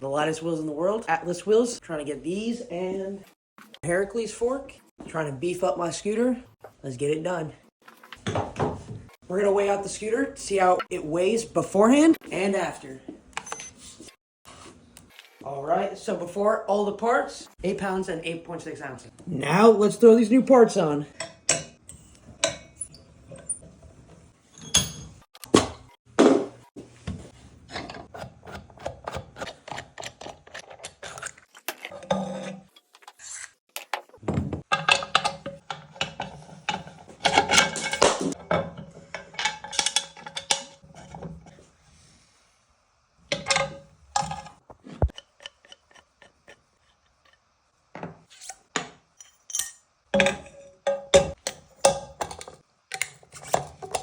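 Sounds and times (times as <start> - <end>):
tools and metal parts clinking: 24.5 - 25.3, 34.6 - 41.3, 49.2 - 53.2.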